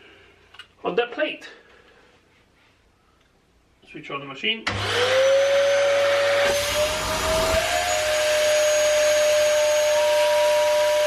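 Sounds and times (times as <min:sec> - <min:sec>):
vacuum cleaner motor whine: 0:04.7 - 0:11.0.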